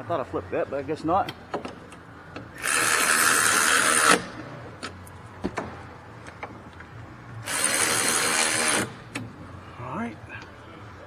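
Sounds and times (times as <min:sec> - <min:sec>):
power wrench spinning: 0:02.5 - 0:04.3, 0:07.4 - 0:09.0.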